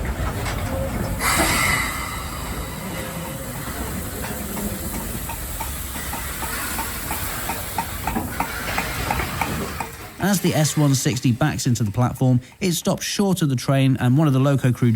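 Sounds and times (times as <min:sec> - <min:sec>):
steam locomotive hissing: 0:00.0 - 0:11.4.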